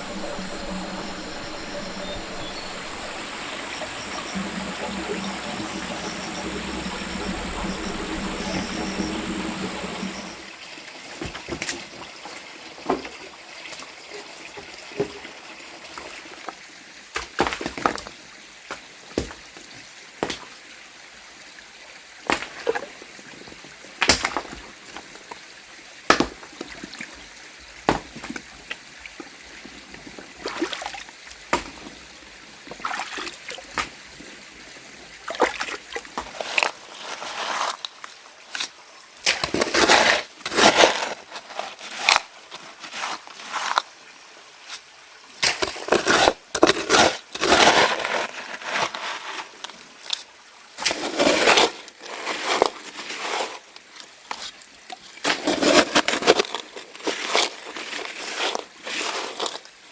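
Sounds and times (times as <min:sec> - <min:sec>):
water trickling: 0:00.0 - 0:10.6, 0:28.2 - 0:36.7.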